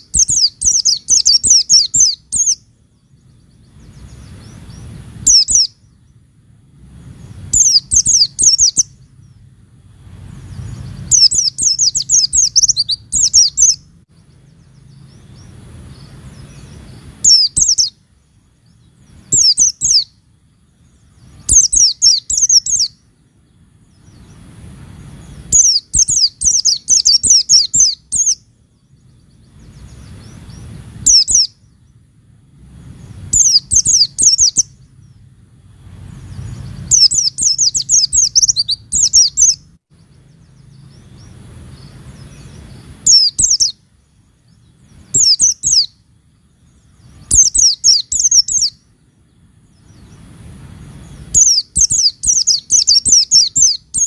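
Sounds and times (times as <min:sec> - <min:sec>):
bird twittering chirps: 0:00.0 - 0:54.0.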